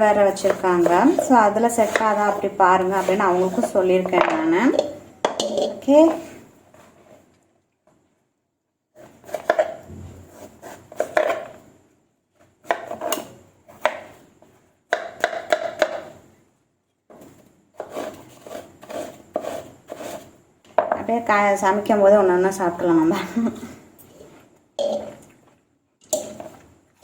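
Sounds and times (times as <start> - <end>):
knife chopping on cutting board: 9.2 - 11.5, 12.6 - 14.1.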